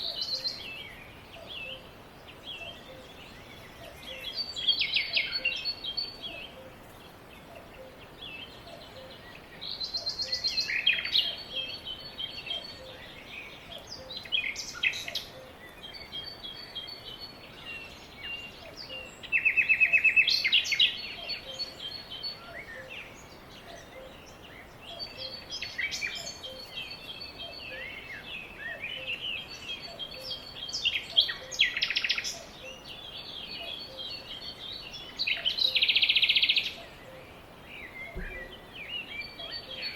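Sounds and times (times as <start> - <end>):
faint steady background noise: 0.0 - 39.9
songbirds singing and calling: 0.0 - 39.9.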